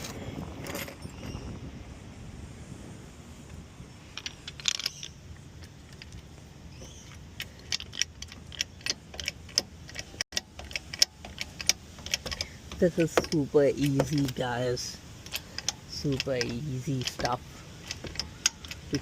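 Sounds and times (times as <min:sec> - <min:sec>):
metallic clicks of tools: 0:04.1 - 0:19.0.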